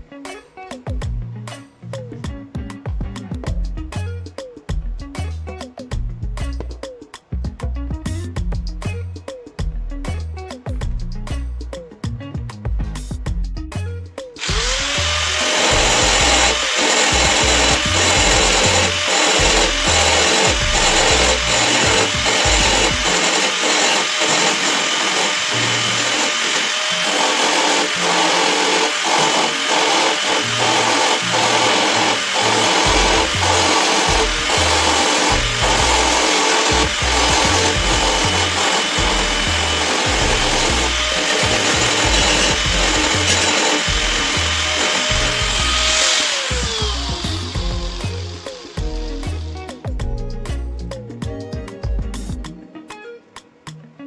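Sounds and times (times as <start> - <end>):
power tool grinding sheet metal: 14.4 - 49.5.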